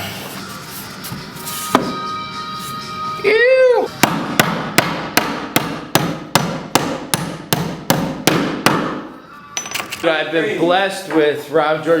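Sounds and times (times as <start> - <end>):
hammer striking nail into wood: 4.0 - 9.1.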